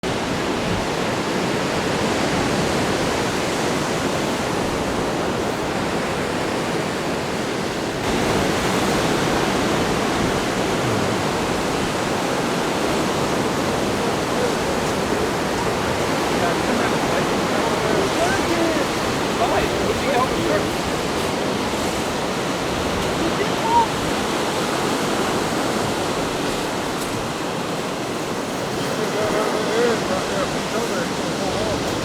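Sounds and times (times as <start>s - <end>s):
ocean surf breaking: 0.0s - 32.0s.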